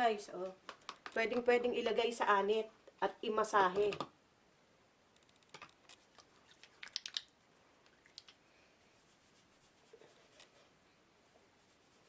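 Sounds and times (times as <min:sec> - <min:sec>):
fingers squishing through wet hair: 0:05.2 - 0:08.4.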